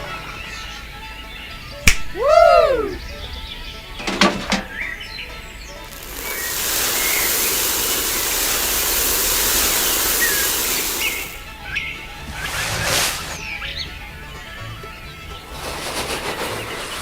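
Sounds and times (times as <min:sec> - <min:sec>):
birds chirping: 0:00.0 - 0:17.0
loud rushing noise: 0:10.5 - 0:13.6.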